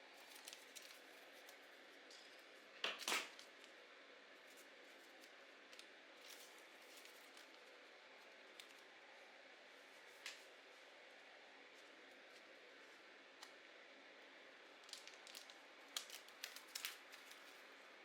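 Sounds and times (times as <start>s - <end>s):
paper snapping: 14.9s - 17.4s.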